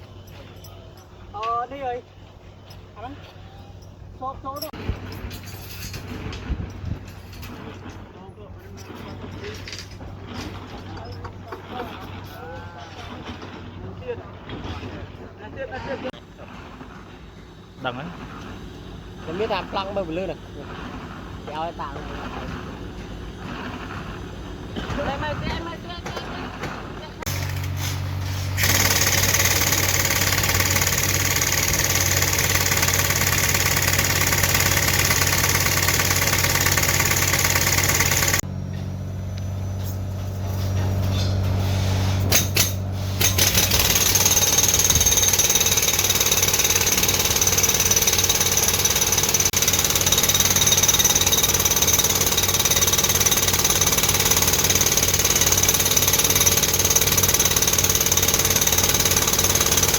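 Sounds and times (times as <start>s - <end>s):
machinery engine hum: 38.4s - 43.1s.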